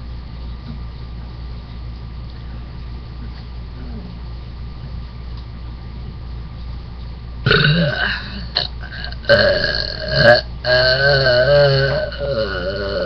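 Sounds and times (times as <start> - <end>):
woman burping: 7.5 - 13.0.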